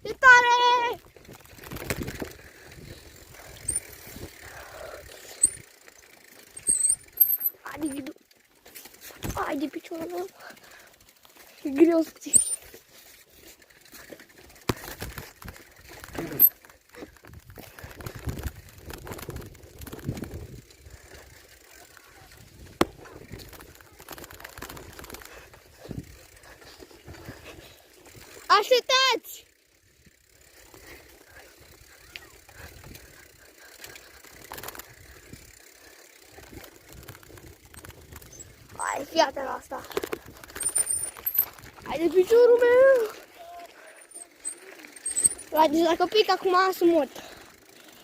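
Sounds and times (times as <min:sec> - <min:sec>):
bicycle tyre noise on rough ground: 0:00.0 - 0:48.0
bicycle knocks and rattles: 0:01.0 - 0:02.5, 0:13.9 - 0:21.2, 0:22.6 - 0:26.1, 0:39.6 - 0:41.9
short high squeaks: 0:44.2 - 0:45.6.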